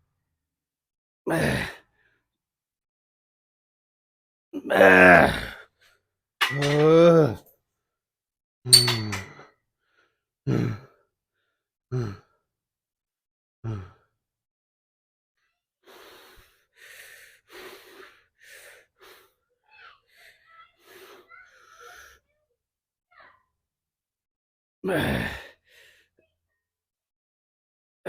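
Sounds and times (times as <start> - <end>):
man grunting: 4.6 - 5.6, 6.7 - 7.4, 24.9 - 25.4.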